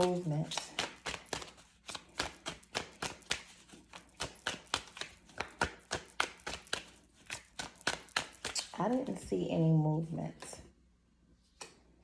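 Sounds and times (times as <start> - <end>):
cards being shuffled: 0.0 - 9.2.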